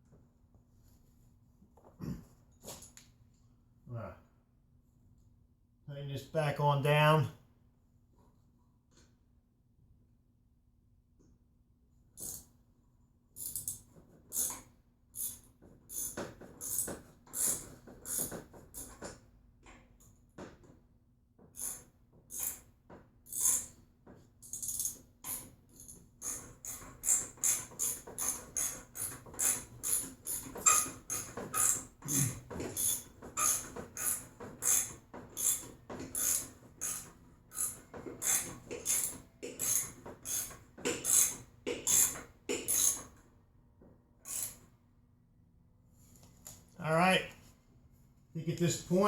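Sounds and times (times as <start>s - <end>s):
ratchet wrench clicking: 26.2s - 31.8s, 32.8s - 35.6s, 36.2s - 43.0s, 44.3s - 44.6s.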